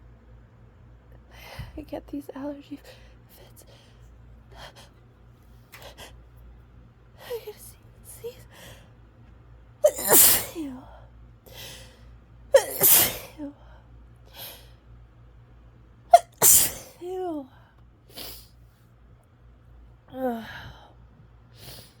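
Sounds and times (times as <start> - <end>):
woman sneezing: 9.8 - 10.8, 12.6 - 13.6, 16.2 - 17.2.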